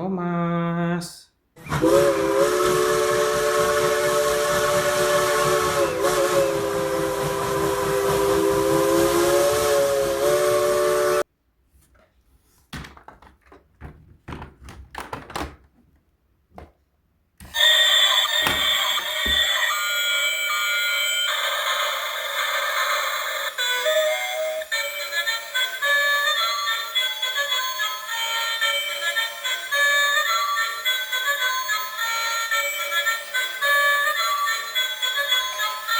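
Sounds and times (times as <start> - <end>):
toy train electronic whistle: 1.6 - 11.2, 17.5 - 35.9
clicks and knocks: 12.7 - 16.8.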